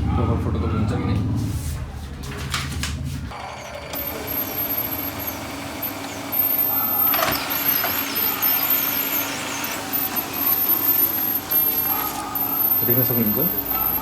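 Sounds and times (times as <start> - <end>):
printer mechanism whirring: 3.3 - 14.0.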